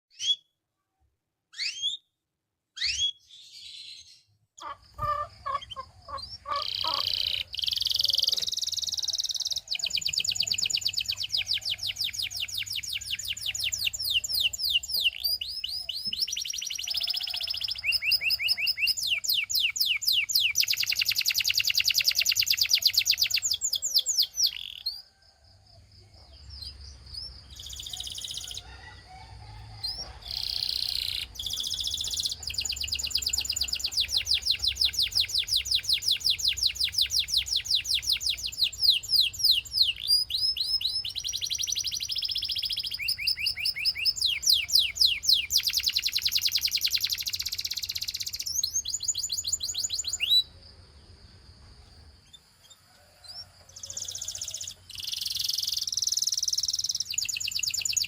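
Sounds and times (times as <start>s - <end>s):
canary singing trills: 0.1s - 0.6s, 1.5s - 2.1s, 2.8s - 25.2s, 26.1s - 29.1s, 29.8s - 50.6s, 52.2s - 58.0s.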